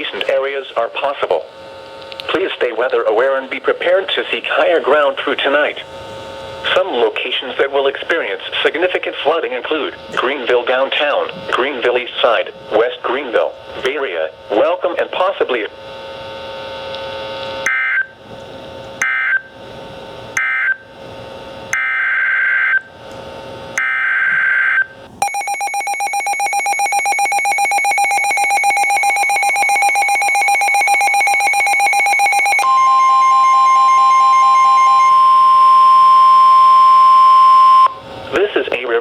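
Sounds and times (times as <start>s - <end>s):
steady warning alarm tone: 1.1s - 13.0s, 15.8s - 18.2s, 19.0s - 23.1s, 23.8s - 38.4s
screechy data bursts: 25.2s - 32.9s.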